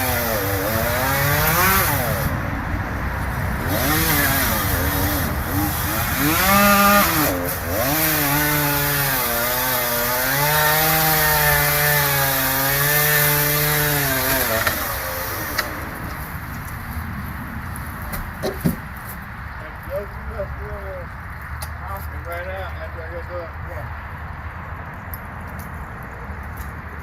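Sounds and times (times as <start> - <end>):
chainsaw cutting wood: 0.0 - 2.4, 3.6 - 16.3.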